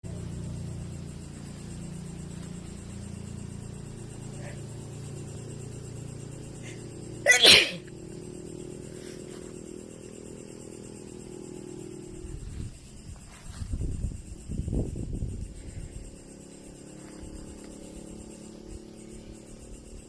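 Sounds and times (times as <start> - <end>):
sneeze: 7.3 - 7.9.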